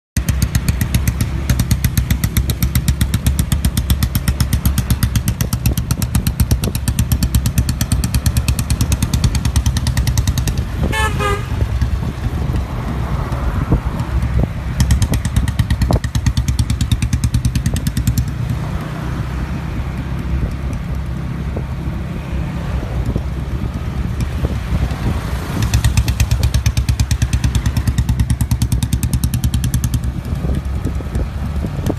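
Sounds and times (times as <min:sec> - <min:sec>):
motorcycle engine exhaust thump: 0:00.2 - 0:18.9
horn toot: 0:10.8 - 0:11.8.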